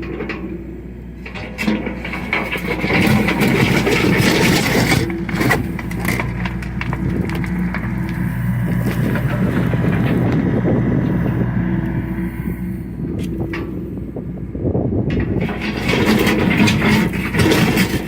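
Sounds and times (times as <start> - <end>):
excavator diesel engine running: 0.0 - 18.0
scraping and knocking: 1.2 - 11.5, 15.1 - 18.0.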